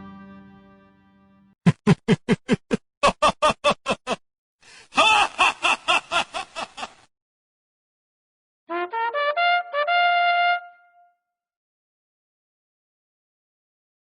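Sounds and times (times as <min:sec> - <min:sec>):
breathy pulsing laugh: 0:01.6 - 0:04.2, 0:04.8 - 0:07.1
short ha laugh bursts: 0:04.9 - 0:07.1.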